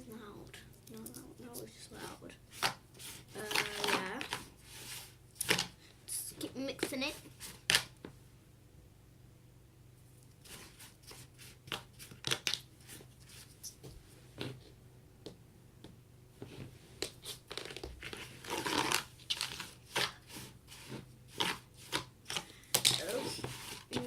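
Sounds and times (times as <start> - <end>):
sand being stirred and scraped: 2.0 - 5.2, 10.4 - 12.1, 18.1 - 22.1, 23.0 - 24.0.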